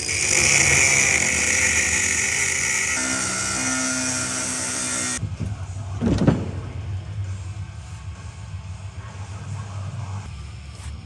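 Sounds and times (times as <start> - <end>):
power tool running: 0.0 - 5.2.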